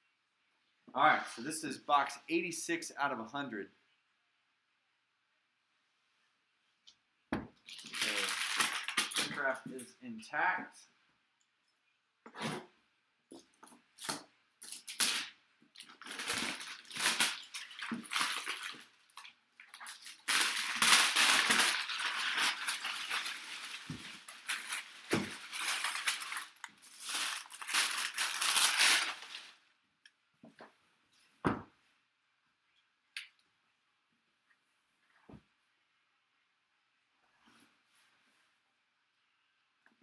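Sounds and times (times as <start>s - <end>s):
packing material crinkling: 7.6s - 9.8s, 13.4s - 29.6s.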